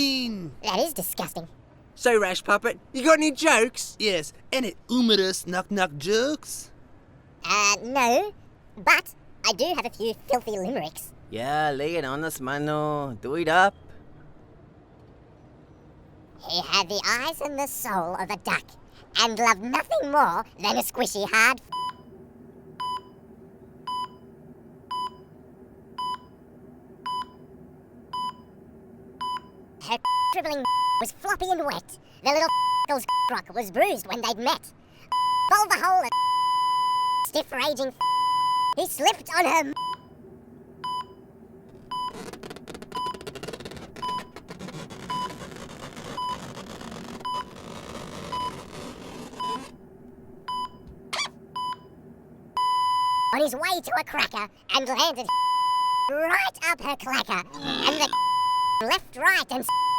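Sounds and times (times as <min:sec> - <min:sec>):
faint low hum: 0:00.0 - 0:59.9
low muffled noise: 0:08.1 - 0:32.0, 0:37.8 - 0:44.4
censor bleeps: 0:29.2 - 0:31.0, 0:38.0 - 0:38.8, 0:52.6 - 0:53.4, 0:55.2 - 0:56.1, 0:57.6 - 0:58.8, 0:59.7 - 0:59.9
short electronic beeps: 0:57.6 - 0:58.8.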